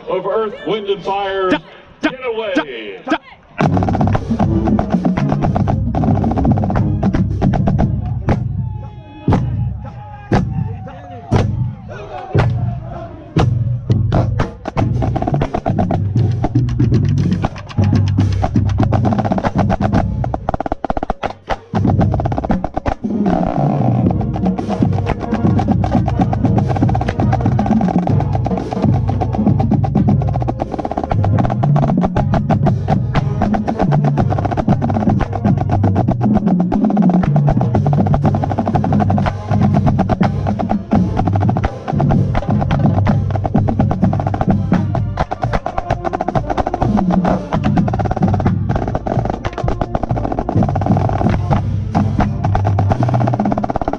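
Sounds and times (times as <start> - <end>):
marching snare drum rolls: 3.6 - 8.6, 11.3 - 53.9
marching band with brass: 3.6 - 53.9.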